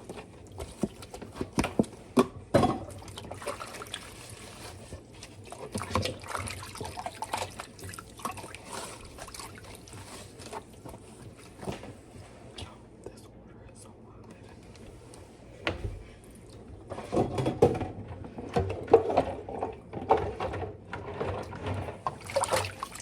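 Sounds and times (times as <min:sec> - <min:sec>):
liquid trickling and sloshing: 0:02.8 - 0:11.4, 0:18.3 - 0:23.0.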